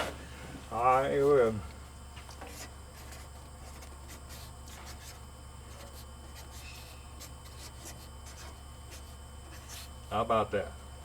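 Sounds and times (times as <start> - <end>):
steady low hum: 0.0 - 11.0
pen scratching while writing: 2.4 - 9.9.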